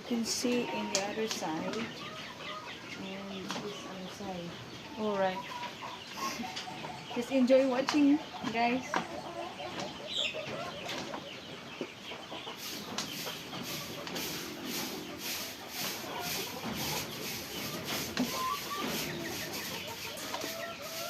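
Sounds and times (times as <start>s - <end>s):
chickens clucking: 0.0s - 21.0s
scratchy cleaning strokes: 12.6s - 21.0s.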